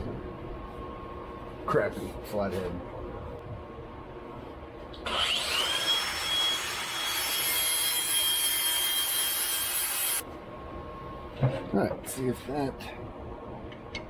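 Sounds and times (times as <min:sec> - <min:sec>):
small power tool grinding whine: 0:05.0 - 0:10.2.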